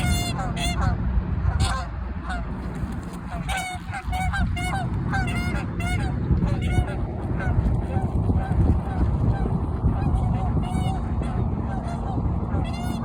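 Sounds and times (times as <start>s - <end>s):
geese honking: 0.0s - 13.0s
steady low rumble: 0.0s - 13.0s.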